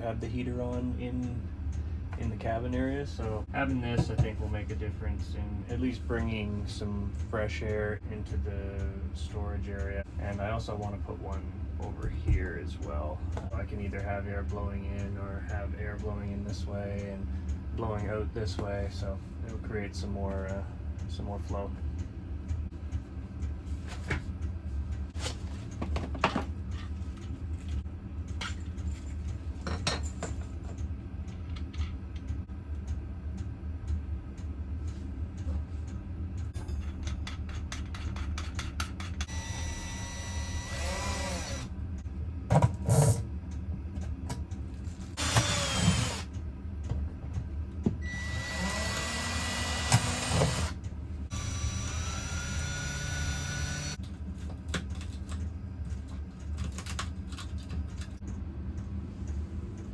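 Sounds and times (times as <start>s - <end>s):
steady low hum: 0.0s - 59.9s
power drill whining: 39.3s - 41.7s, 45.2s - 46.3s, 48.0s - 54.0s.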